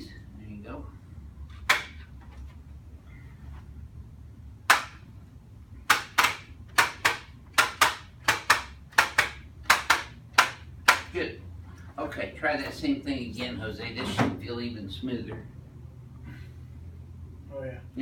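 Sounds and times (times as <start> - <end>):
sharp slapping strikes: 1.6 - 2.0, 4.6 - 5.1, 5.9 - 11.1.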